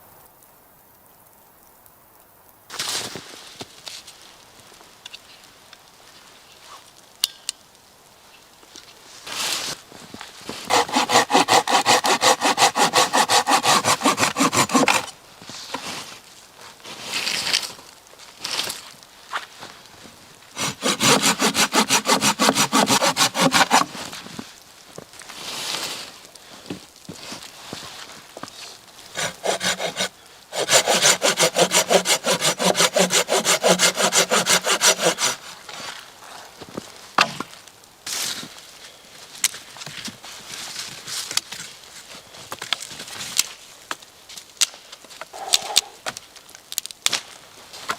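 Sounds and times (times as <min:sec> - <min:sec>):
soft saw scrapes: 0:10.5 - 0:16.2, 0:20.6 - 0:24.2, 0:28.6 - 0:36.5
saw cutting wood: 0:10.7 - 0:15.1, 0:20.6 - 0:24.0, 0:29.1 - 0:35.5.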